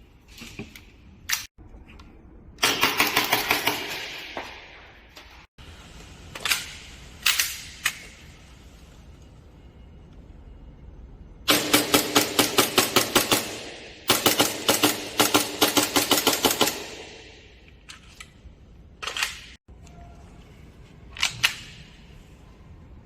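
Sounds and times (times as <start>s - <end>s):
airsoft gun firing: 11.5s - 17.4s.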